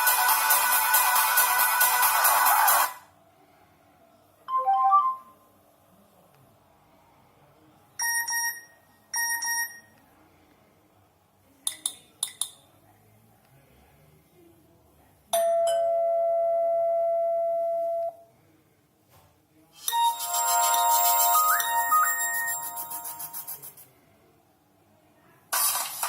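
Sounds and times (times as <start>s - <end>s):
melodic ringtone: 4.5s - 5.4s, 19.9s - 23.4s
ding-dong chimes: 15.4s - 16.8s, 19.9s - 22.8s.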